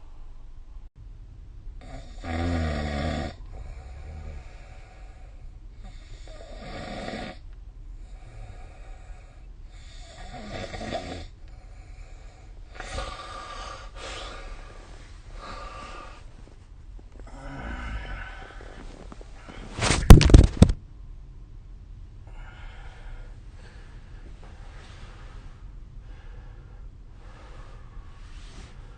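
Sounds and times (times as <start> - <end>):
person snoring: 1.8 - 7.4, 8.0 - 11.3, 17.2 - 19.8.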